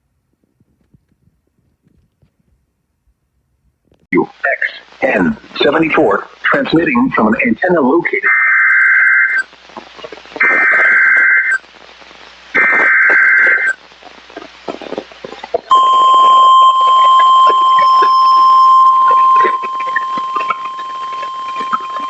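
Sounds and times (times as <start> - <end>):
harsh buzzy data bursts: 15.7 - 22.0
steady single-pitch alert tone: 15.7 - 22.0.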